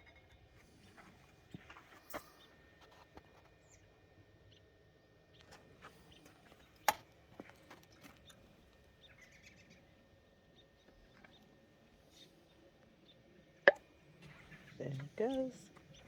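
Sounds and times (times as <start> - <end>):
robins chirping: 9.0 - 9.9.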